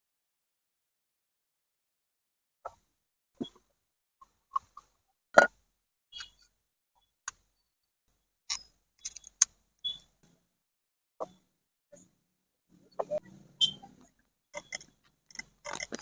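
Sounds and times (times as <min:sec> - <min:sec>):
clicks of parts and tools handled: 0:08.5 - 0:09.6, 0:14.6 - 0:16.0.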